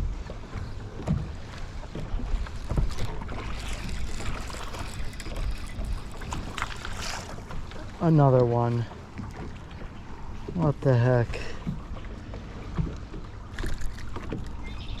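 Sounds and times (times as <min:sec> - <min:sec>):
wind rumbling on microphone: 0:00.0 - 0:08.0.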